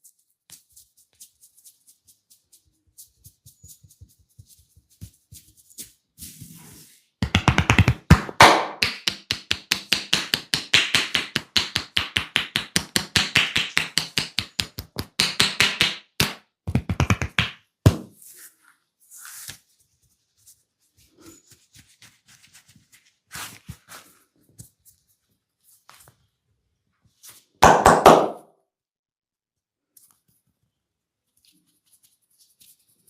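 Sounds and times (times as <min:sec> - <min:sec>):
hands tapping on a head: 0:07.2 - 0:18.0, 0:27.6 - 0:28.4.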